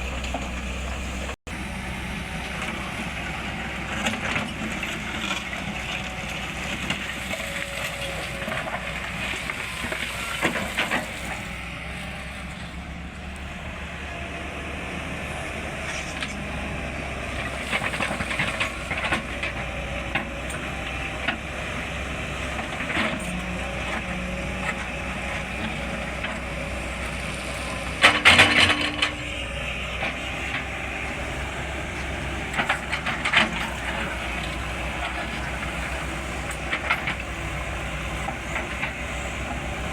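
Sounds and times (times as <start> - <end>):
excavator bucket clanks and scrapes: 0.0 - 1.4, 2.5 - 11.5, 17.4 - 21.5, 22.5 - 39.9
excavator engine rumble: 0.0 - 39.9.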